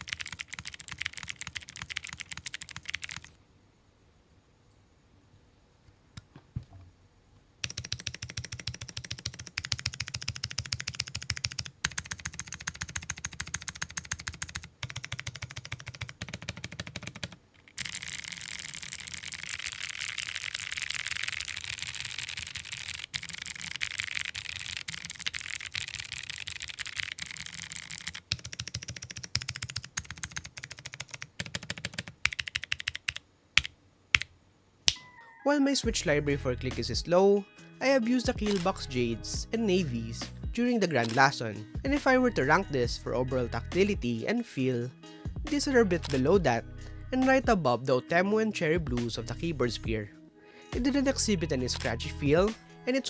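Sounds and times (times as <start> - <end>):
clicky mechanical keyboard typing: 0.0 - 3.4, 7.6 - 34.3, 38.4 - 38.8, 41.0 - 41.4, 46.0 - 46.3.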